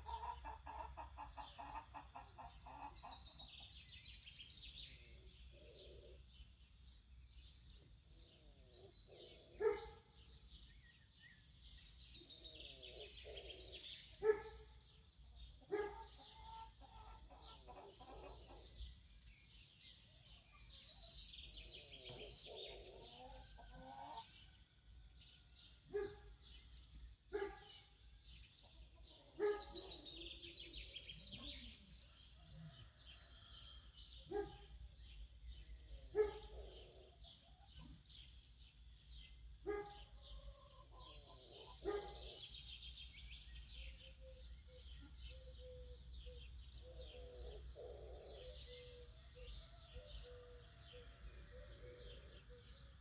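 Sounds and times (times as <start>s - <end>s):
small birds chirping: 0.0s - 53.0s
low warbling bird song: 1.0s - 53.0s.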